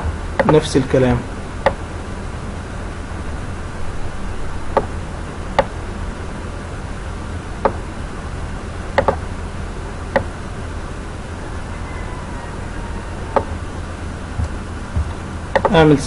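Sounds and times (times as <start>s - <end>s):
low hum and hiss: 0.0s - 16.0s
computer mouse clicking: 9.0s - 9.2s, 15.6s - 15.8s.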